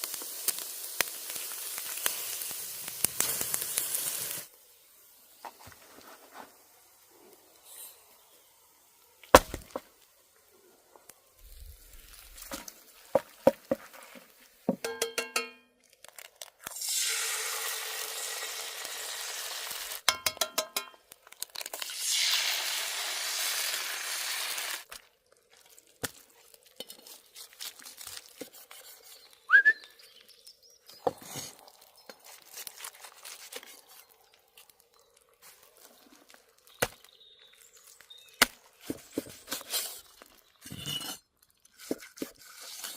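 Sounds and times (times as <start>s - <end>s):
utensils and dishes clinking: 14.8s - 15.7s, 20.1s - 21.0s.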